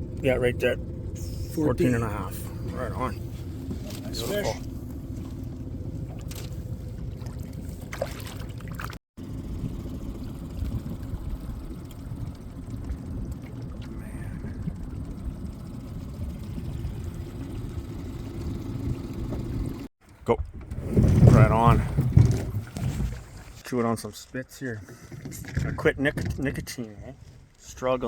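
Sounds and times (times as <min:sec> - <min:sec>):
outboard motor running: 0:00.0 - 0:19.9.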